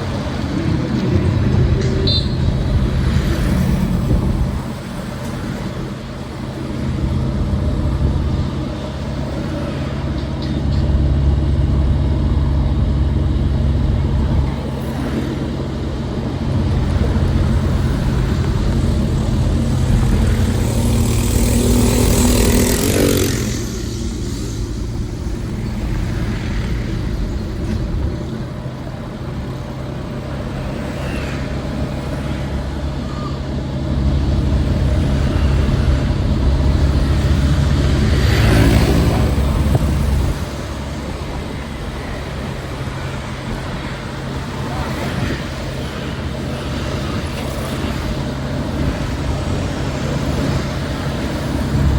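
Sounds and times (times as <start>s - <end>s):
traffic engine rumble: 0.0s - 51.9s
vehicle passing close by: 14.2s - 28.6s, 33.9s - 51.9s.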